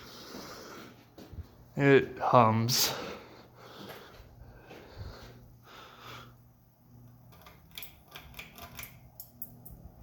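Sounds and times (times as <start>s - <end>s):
ceiling fan motor humming: 0.0s - 10.0s
pull chain and switch clicks: 7.3s - 9.8s.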